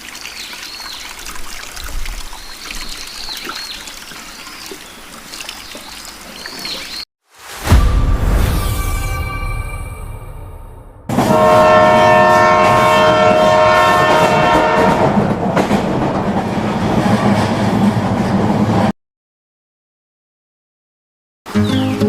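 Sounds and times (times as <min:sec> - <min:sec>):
train horn chord: 0:11.1 - 0:15.2
moving train noise: 0:11.1 - 0:18.9.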